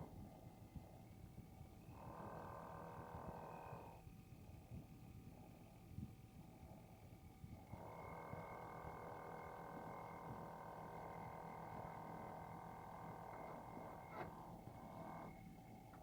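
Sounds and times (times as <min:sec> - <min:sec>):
refrigerator whining hum: 0:00.0 - 0:16.0.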